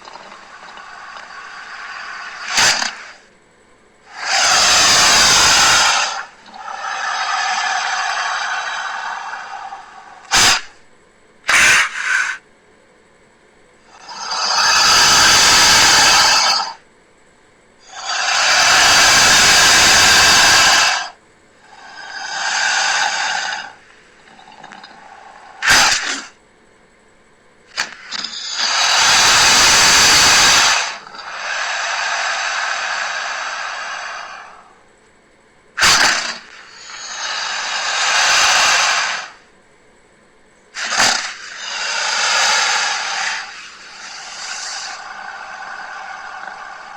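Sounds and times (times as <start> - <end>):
crocodile hissing calls: 0.0 - 3.3, 4.0 - 10.9, 11.5 - 12.4, 13.9 - 16.8, 17.8 - 26.4, 27.7 - 34.8, 35.8 - 39.5, 40.7 - 46.9
short sharp cracks: 0.0 - 3.3, 11.5 - 12.4, 27.7 - 31.2, 35.8 - 39.4.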